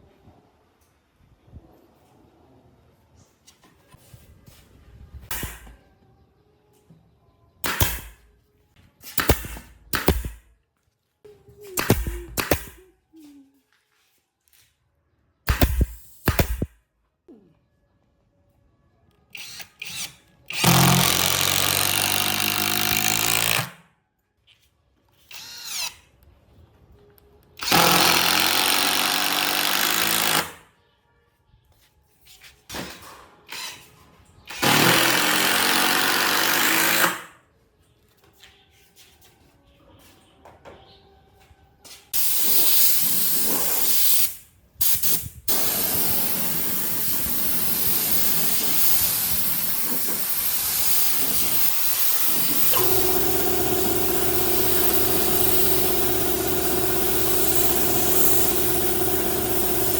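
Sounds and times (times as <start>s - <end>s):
power tool running: 45.5s - 59.9s.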